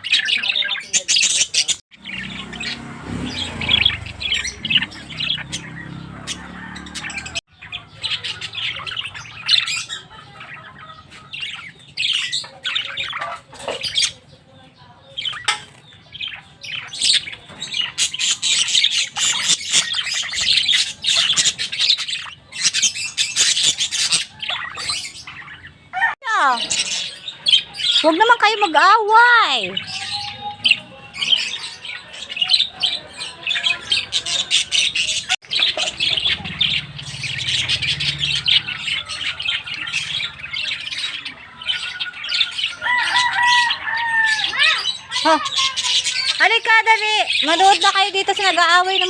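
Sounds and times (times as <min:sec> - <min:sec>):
lovebirds chattering and squawking: 0:00.0 - 0:49.0.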